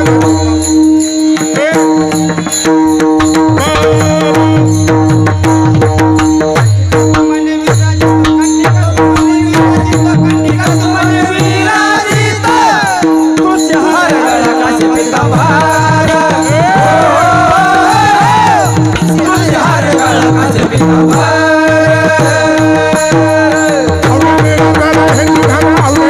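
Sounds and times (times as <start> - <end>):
hand drum rhythm: 0.0 - 26.0
jingling hand cymbals: 0.0 - 26.0
person singing: 3.6 - 4.9.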